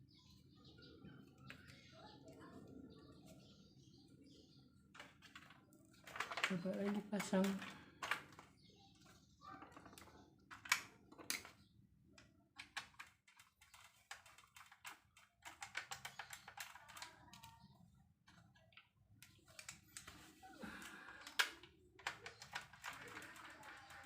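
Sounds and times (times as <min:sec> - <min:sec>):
plastic clicks and taps: 0:05.0 - 0:17.6, 0:20.8 - 0:24.0.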